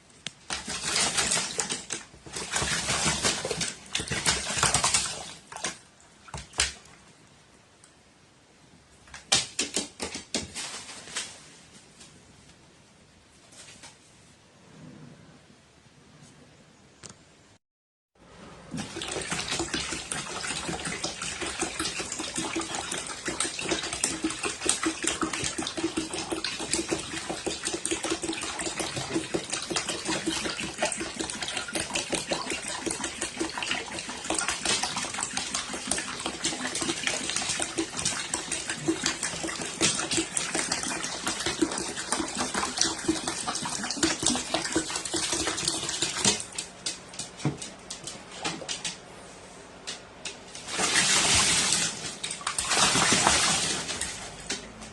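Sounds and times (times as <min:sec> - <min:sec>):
water splashing and running: 0:00.4 - 0:07.0, 0:18.7 - 0:49.0, 0:50.6 - 0:54.9.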